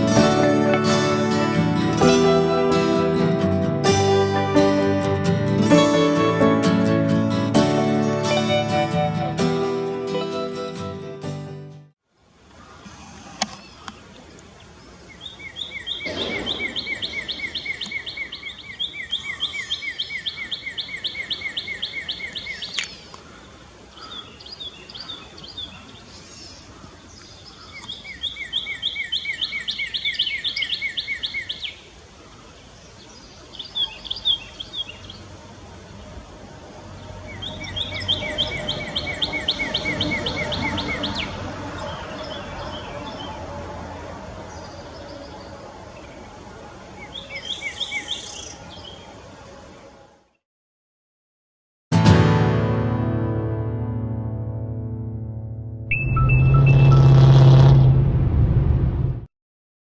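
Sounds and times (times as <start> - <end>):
soft bird chirps: 12.6 - 23.4.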